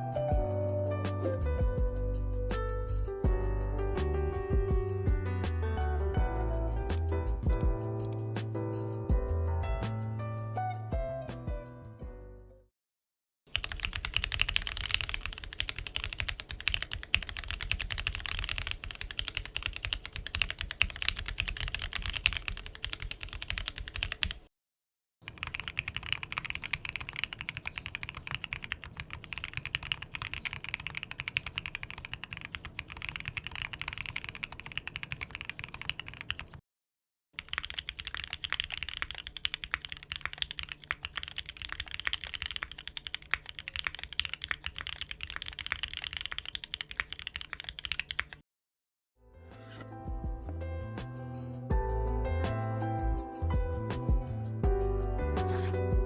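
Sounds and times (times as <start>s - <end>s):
mechanical keyboard typing: 13.5s - 24.4s, 25.3s - 36.6s, 37.4s - 48.4s.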